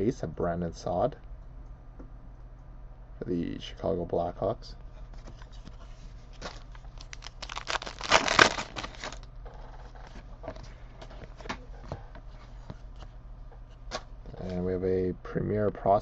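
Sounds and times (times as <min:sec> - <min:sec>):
card packaging crinkling: 0:06.3 - 0:09.2.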